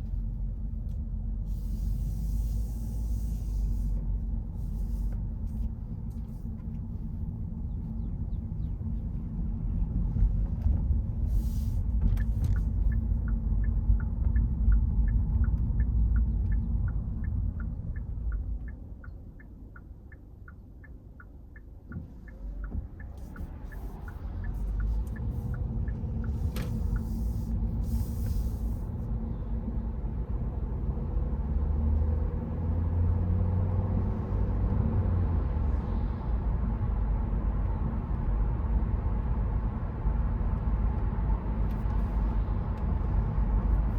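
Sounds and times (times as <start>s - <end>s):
car engine and tyres rumbling: 0.0s - 43.9s
short hissing sweeps: 1.5s - 4.0s, 26.2s - 28.9s
regular ticking: 12.5s - 27.8s.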